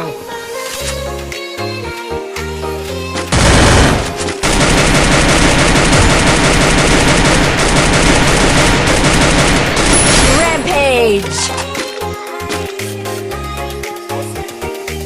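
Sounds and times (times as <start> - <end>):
rapid automatic gunfire: 3.3 - 10.8.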